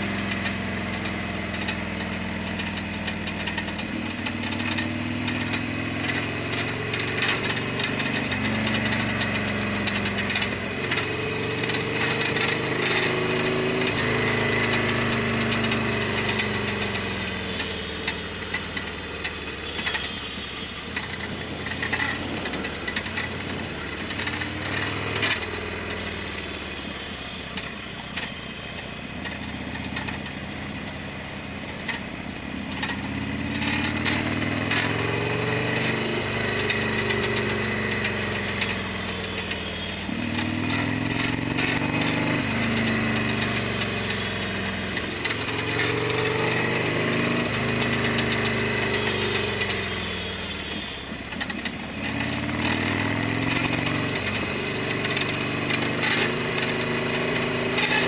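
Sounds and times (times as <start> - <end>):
motorcycle engine running: 0.0 - 58.0
sharp clicks and rattles: 17.6 - 20.2, 21.0 - 25.9, 29.2 - 30.4, 45.0 - 46.2.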